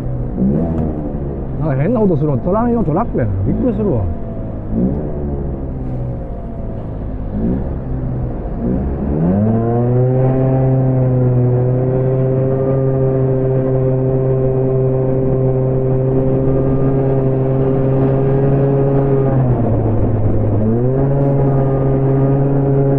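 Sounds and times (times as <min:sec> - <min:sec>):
scooter engine revving: 0:03.0 - 0:06.0.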